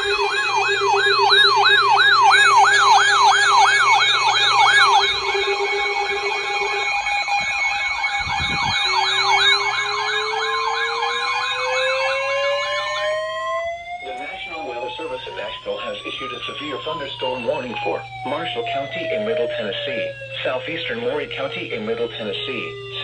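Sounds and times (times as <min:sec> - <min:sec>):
electronic sirens yelping: 0:00.0 - 0:23.0
low tone rising slowly: 0:00.0 - 0:23.0
steady siren tones: 0:00.0 - 0:23.0.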